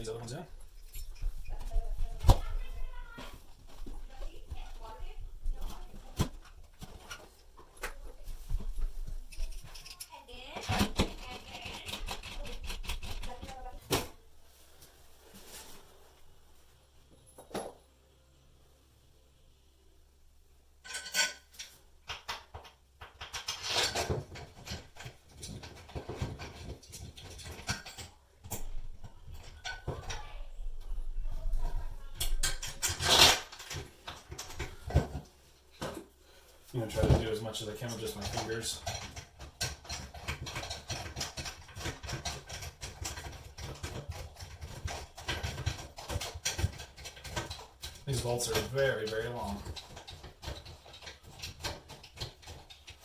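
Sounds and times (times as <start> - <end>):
small metal hardware clinking: 20.8 - 21.8.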